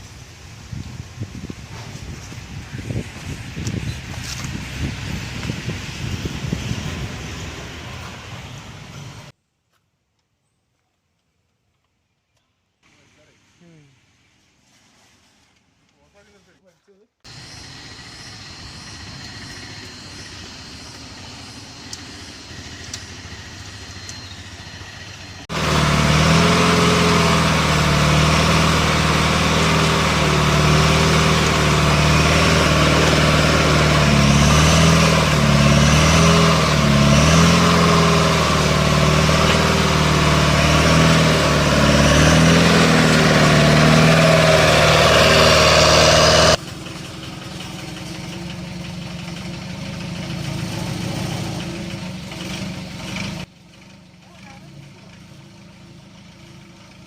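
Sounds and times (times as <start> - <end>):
excavator diesel engine labouring: 17.3 - 53.5.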